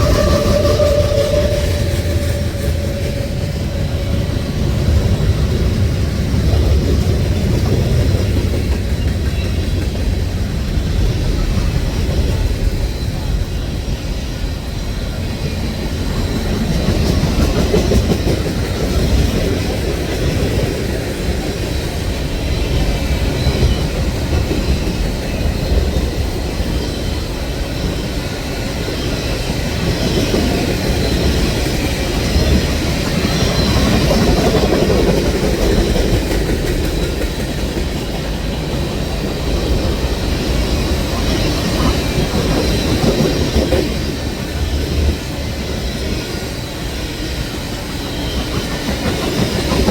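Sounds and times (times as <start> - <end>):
faint high squeal: 0.0 - 4.7
train wheels clattering on rails: 0.0 - 49.9.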